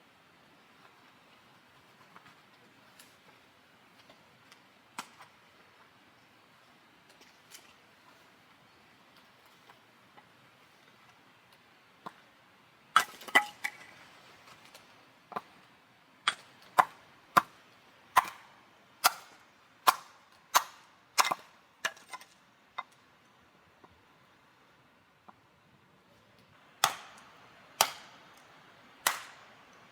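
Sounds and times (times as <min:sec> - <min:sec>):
chopping strikes on wood: 0:26.8 - 0:28.2, 0:29.0 - 0:29.4.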